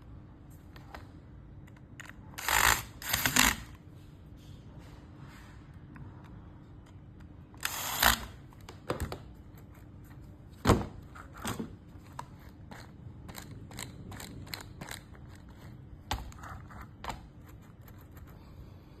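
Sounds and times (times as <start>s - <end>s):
scrape: 4.4s - 5.7s.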